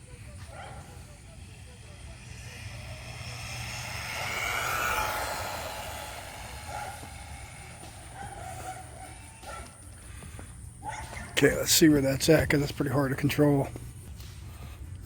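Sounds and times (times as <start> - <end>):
electric motor whining: 0.0 - 10.5.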